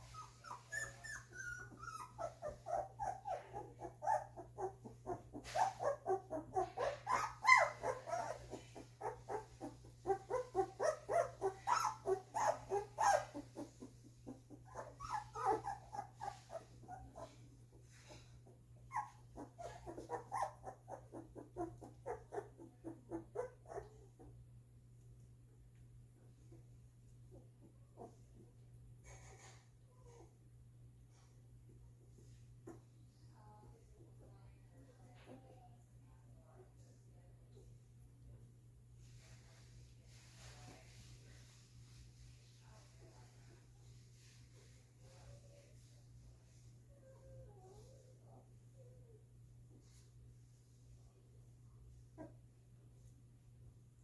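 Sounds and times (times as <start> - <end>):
puppies whimpering and squeaking: 0.0 - 17.4, 18.9 - 24.0.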